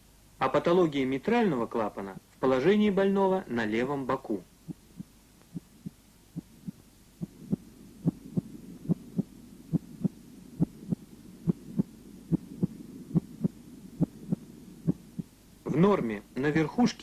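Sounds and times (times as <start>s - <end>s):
faint low hiss: 0.0s - 17.0s
heartbeat lub-dub: 4.7s - 15.4s.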